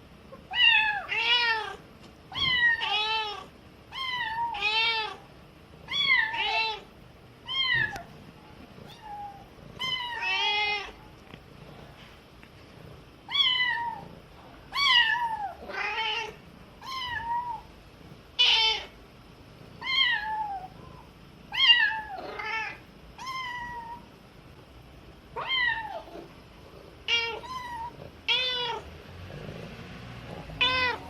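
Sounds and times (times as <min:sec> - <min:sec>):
kitten meowing: 0:30.6 - 0:31.0.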